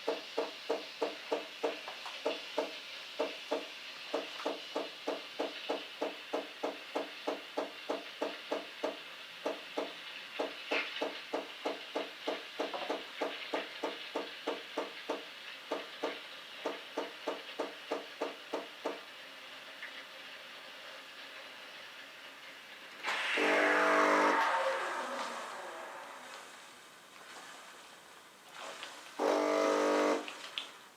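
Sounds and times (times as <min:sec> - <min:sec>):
espresso machine pump pulsing: 0:29.2 - 0:30.3
espresso machine steady hiss: 0:29.2 - 0:30.3.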